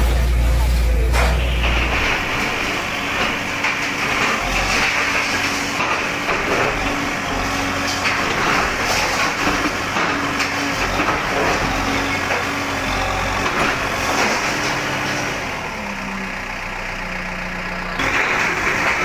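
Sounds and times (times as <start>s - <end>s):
bulldozer engine running: 0.0s - 19.0s
masonry crunching and knocking: 1.6s - 15.3s.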